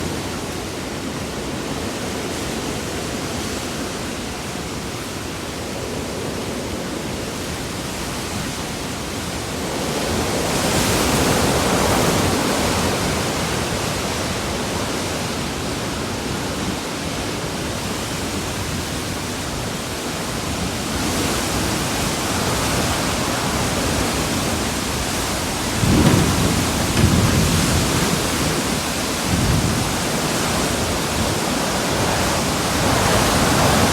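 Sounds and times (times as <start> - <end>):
hurricane-force wind: 0.0 - 33.9
wind buffeting microphone: 22.9 - 33.9
driving rain: 23.3 - 33.9.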